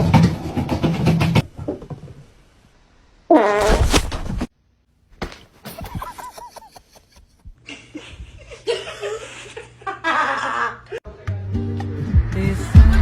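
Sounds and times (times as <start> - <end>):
people laughing: 5.7 - 11.0.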